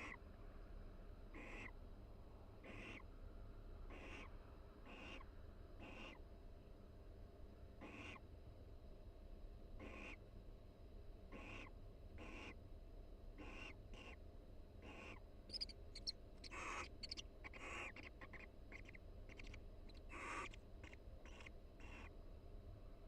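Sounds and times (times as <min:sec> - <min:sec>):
owls giving soft raspy calls: 0:00.0 - 0:00.2, 0:01.3 - 0:01.8, 0:02.6 - 0:03.1, 0:03.9 - 0:06.2, 0:07.8 - 0:08.2, 0:09.8 - 0:10.2, 0:11.3 - 0:12.6, 0:13.4 - 0:14.2, 0:14.8 - 0:22.2.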